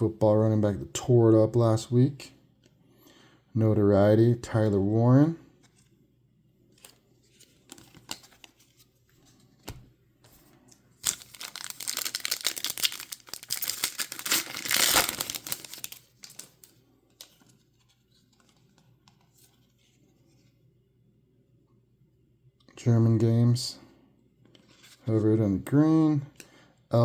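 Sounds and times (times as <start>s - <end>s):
card handling taps: 9.6s - 9.9s
plastic wrapper tearing and crinkling: 11.0s - 17.3s.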